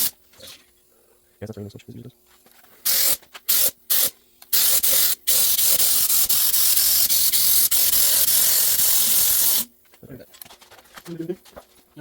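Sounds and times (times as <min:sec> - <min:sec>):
spray paint hissing: 0:02.8 - 0:09.7.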